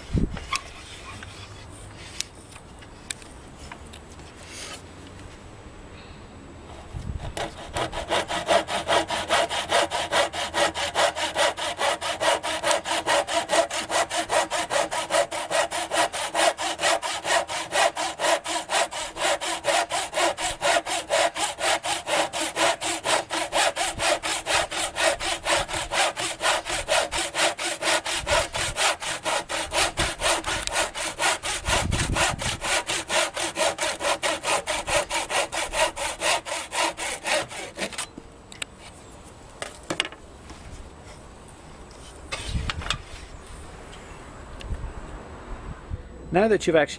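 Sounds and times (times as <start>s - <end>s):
hand saw cutting: 7.3s - 38.1s.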